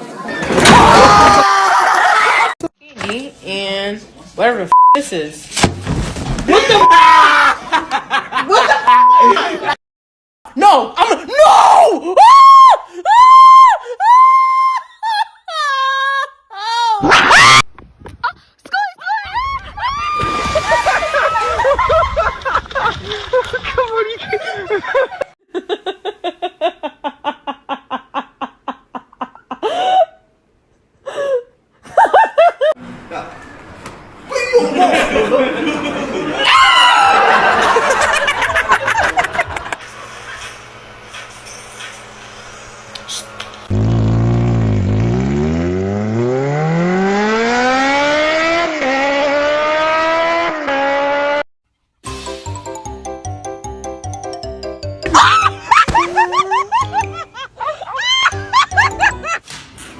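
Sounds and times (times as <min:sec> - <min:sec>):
rhythmic laughter: 0:37.4 - 0:40.6, 0:54.8 - 0:59.4
engine revving up: 0:43.4 - 0:51.4
music: 0:52.0 - 0:56.2, 0:58.3 - 0:59.3.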